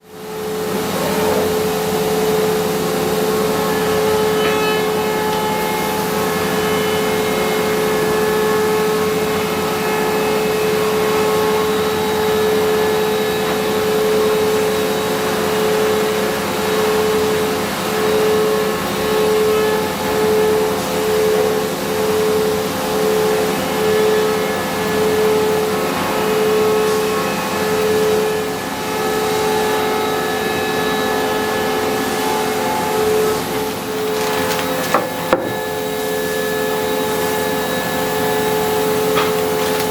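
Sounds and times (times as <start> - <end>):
woodworking machine humming: 0.2 - 16.7, 32.3 - 39.9.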